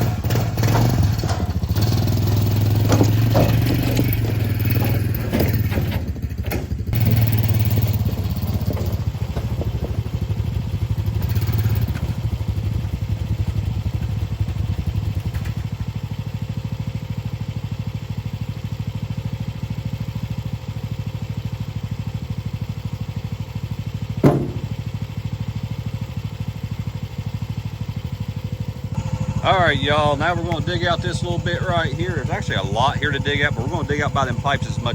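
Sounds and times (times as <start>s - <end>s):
small gasoline engine running: 0.0s - 34.9s
sharp clunk: 24.2s - 24.8s.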